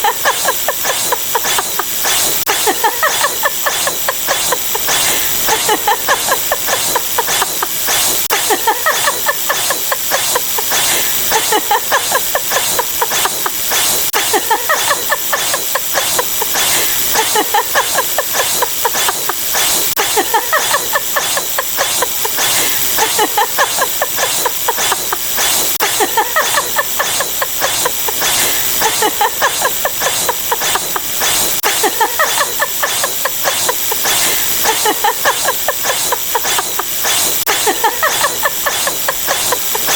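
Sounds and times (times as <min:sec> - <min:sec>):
hissing crackling noise: 0:00.0 - 0:39.9.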